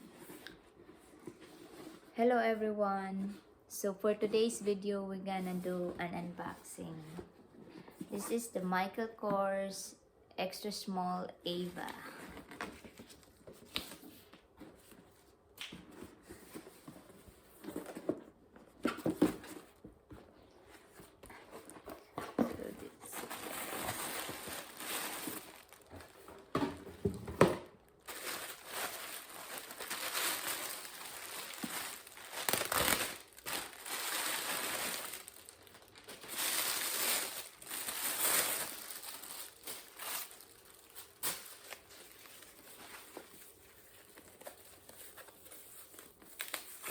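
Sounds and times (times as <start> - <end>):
wrapping crinkling and rustling: 16.0 - 46.9.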